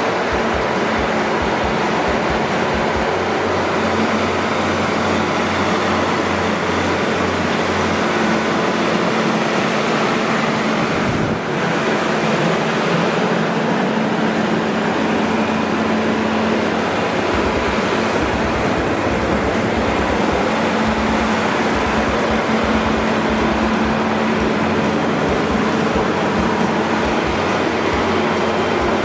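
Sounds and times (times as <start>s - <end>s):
diesel generator running loud: 0.0s - 29.0s
generator fan roar: 0.0s - 29.0s
low hum: 13.6s - 29.0s.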